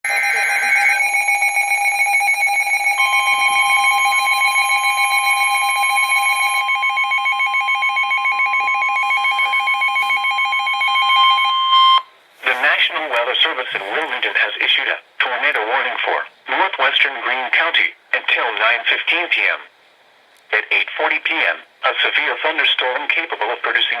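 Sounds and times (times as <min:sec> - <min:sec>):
rapidly pulsing alarm beep: 0:00.0 - 0:12.1
steady warning alarm tone: 0:00.0 - 0:12.1.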